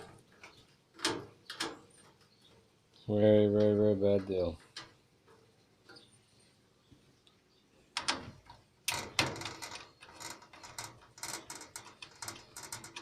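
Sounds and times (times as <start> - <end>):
metallic clicks and rattles: 0.0 - 2.2, 4.6 - 6.0, 8.0 - 13.0.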